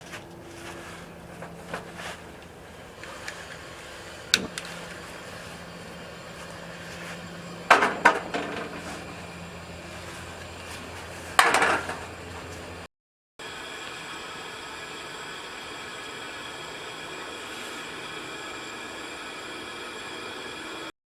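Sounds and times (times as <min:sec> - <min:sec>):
steady low hum: 0:00.0 - 0:20.9
objects knocking and clattering: 0:07.7 - 0:09.3, 0:11.4 - 0:12.5.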